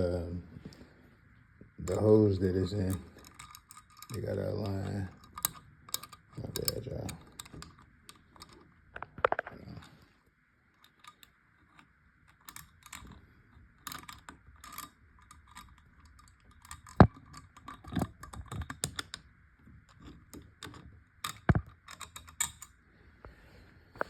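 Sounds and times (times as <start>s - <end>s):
door handle hardware clicking: 2.9s - 8.7s, 10.8s - 13.2s, 13.8s - 19.3s, 19.9s - 22.8s.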